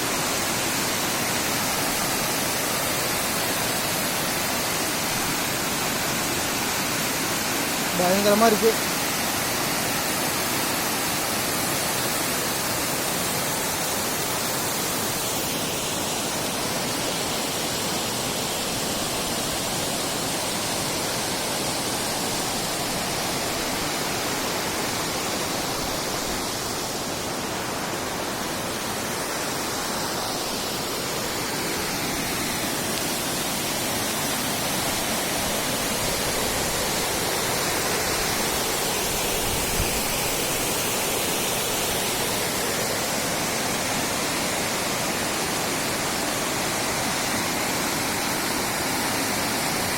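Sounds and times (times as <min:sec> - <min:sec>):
waterfall rushing: 0:00.0 - 0:49.9.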